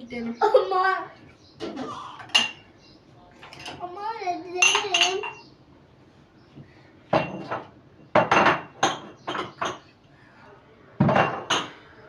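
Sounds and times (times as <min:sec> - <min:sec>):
dishes and cutlery clinking: 0:01.6 - 0:02.7, 0:03.4 - 0:03.8, 0:04.6 - 0:05.4, 0:07.1 - 0:09.9, 0:11.0 - 0:11.9.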